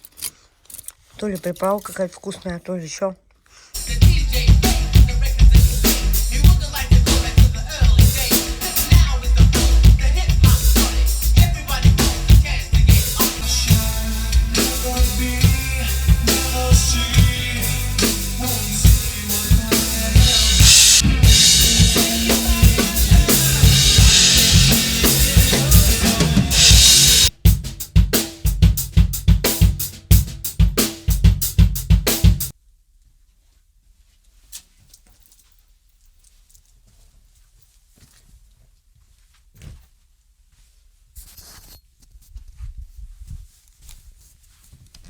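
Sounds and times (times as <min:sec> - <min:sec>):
music with sustained bass line: 0:03.8 - 0:27.3
drum kit played hard: 0:03.8 - 0:32.5.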